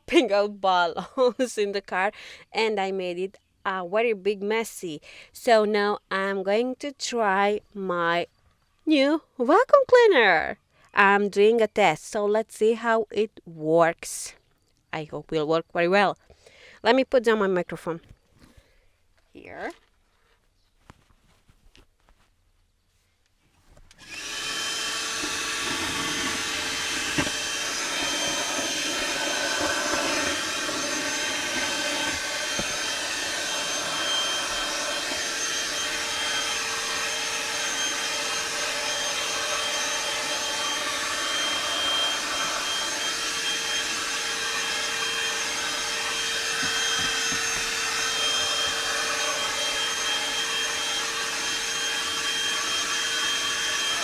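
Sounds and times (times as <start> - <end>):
hand-held vacuum cleaner running: 24.0 - 54.0.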